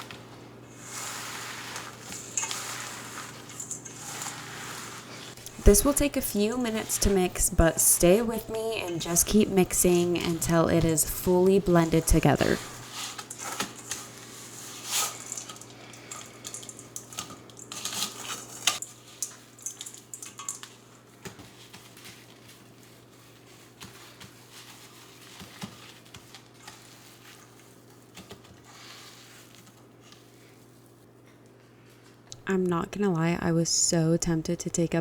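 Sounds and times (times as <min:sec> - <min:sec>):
hands squishing dough: 0:21.2 - 0:31.0.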